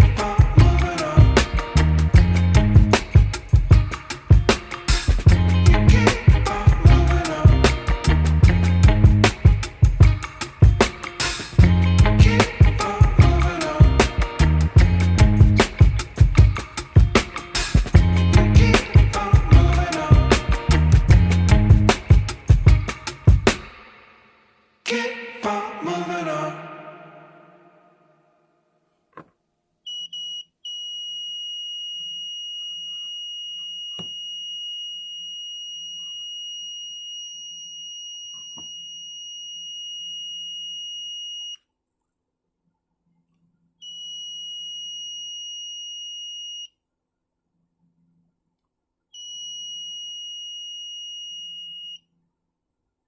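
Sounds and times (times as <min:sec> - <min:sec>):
security alarm buzzer: 0:29.9 - 0:41.6, 0:43.8 - 0:46.7, 0:49.2 - 0:52.0.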